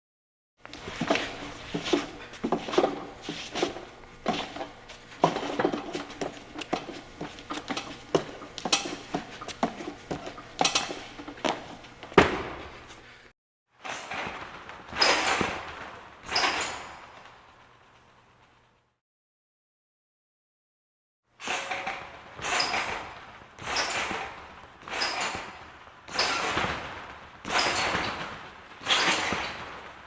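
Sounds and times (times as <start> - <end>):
fencing blades clashing: 0.8 - 12.0.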